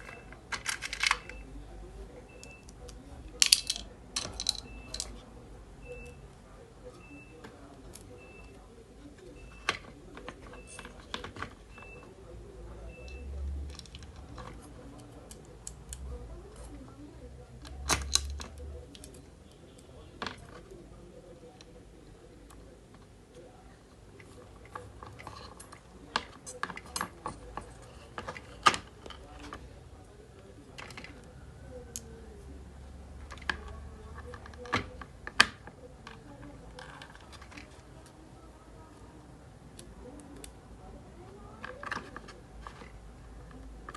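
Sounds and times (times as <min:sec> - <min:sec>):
tools clicking and knocking: 0:00.0 - 0:01.4, 0:02.4 - 0:05.2, 0:17.6 - 0:19.2, 0:24.2 - 0:29.6.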